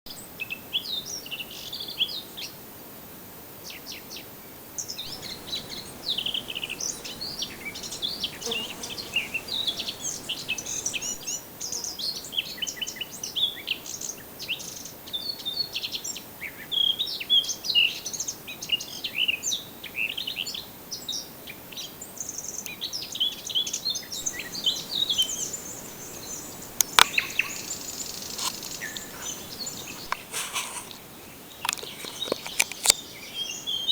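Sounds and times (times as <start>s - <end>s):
birds chirping and trilling: 4.8s - 13.0s, 22.5s - 33.9s.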